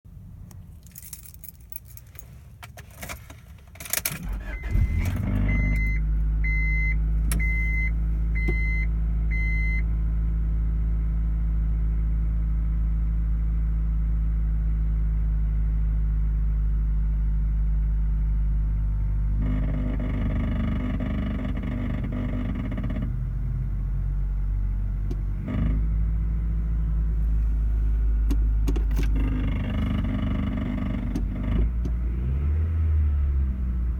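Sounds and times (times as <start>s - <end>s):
car engine starting and running: 0.1s - 33.9s
keys jangling: 0.7s - 3.2s.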